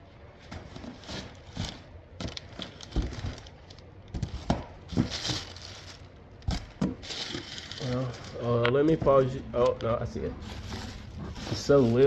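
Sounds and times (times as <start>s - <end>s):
objects handled with knocks and clicks: 0.4s - 12.0s.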